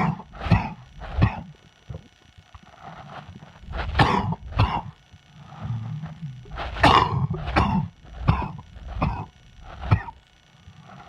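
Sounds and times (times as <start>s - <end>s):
man coughing: 0.0s - 1.5s, 4.0s - 4.9s, 6.8s - 9.3s.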